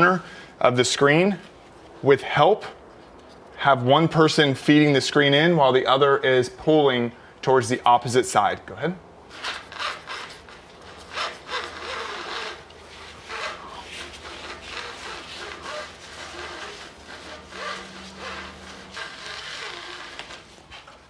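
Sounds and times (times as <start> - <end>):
fabric rubbing and scraping: 9.3 - 21.0.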